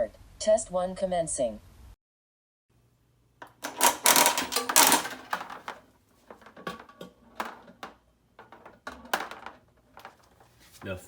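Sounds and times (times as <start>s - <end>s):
gumballs clattering into machine: 3.4s - 10.4s.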